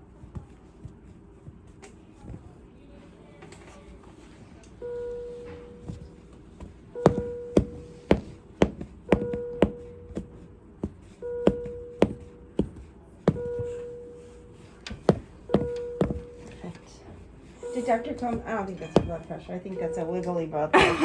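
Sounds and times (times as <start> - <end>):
medical monitor alarm tone: 4.7 - 21.0
sharp taps or knocks: 5.5 - 16.9, 17.6 - 20.4.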